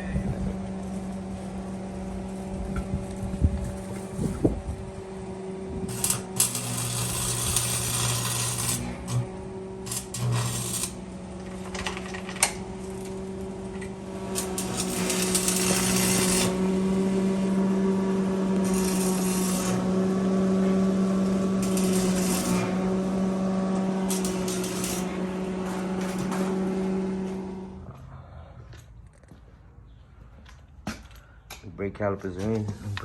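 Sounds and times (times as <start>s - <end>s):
machine hum: 0.0s - 29.4s
welding hissing crackle: 5.8s - 27.6s.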